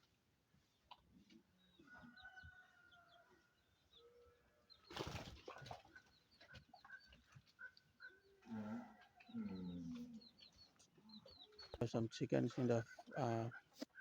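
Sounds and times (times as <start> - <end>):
chickens clucking: 5.1 - 14.0.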